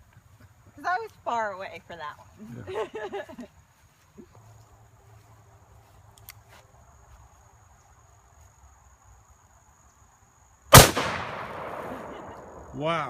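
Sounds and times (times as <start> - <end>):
revolver gunshot with echo: 10.7 - 12.7.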